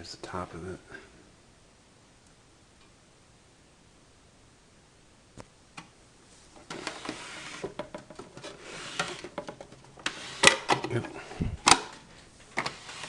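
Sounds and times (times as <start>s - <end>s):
rustling and clattering knocks: 6.6s - 10.9s.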